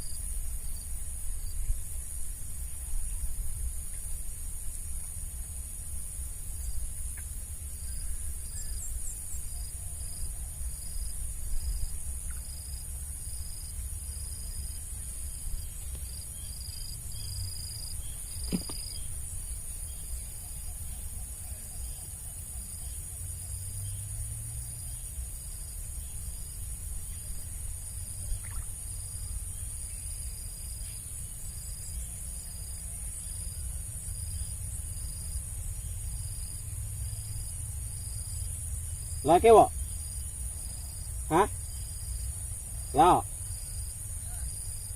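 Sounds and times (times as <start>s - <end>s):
cricket chirping: 0.0s - 44.9s
high insect drone: 0.0s - 44.9s.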